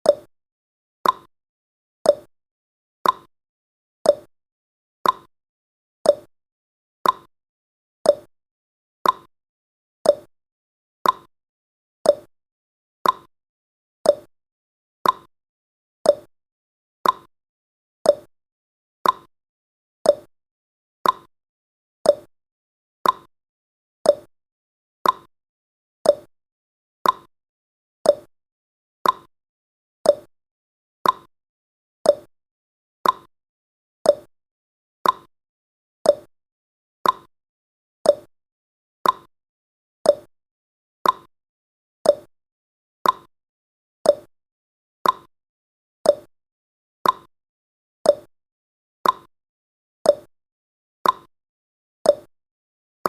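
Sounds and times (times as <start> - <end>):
clock ticking: 13.0 - 13.3, 29.0 - 29.3, 33.0 - 33.3, 37.0 - 37.3, 39.0 - 39.3, 41.0 - 41.3, 43.0 - 43.3, 45.0 - 45.3, 47.0 - 47.3.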